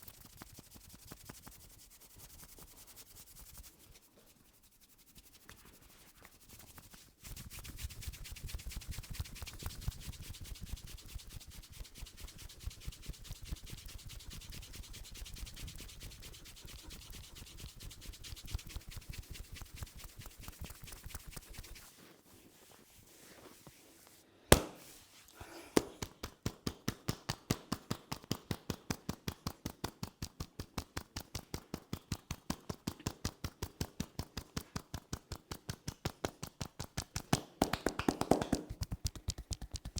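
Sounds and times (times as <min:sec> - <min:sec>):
hands rubbing scalp: 0:00.0 - 0:39.9
loud sharp crack: 0:24.5 - 0:24.8
rhythmic tapping on head: 0:25.8 - 0:39.9.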